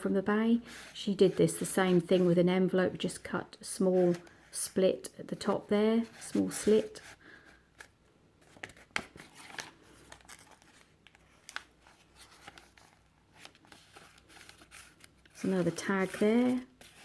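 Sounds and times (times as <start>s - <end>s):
paper rustling: 5.4s - 17.0s.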